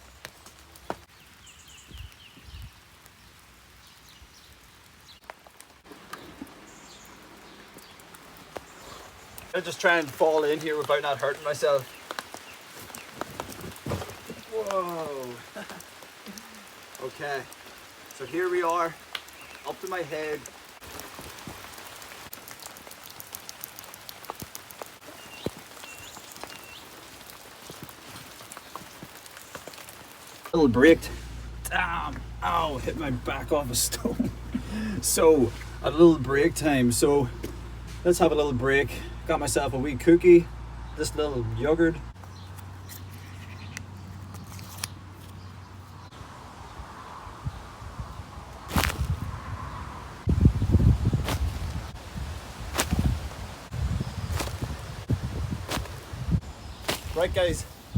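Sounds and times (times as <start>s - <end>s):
rain dripping taps: 0.0s - 40.7s
soft low thumps: 30.6s - 39.4s.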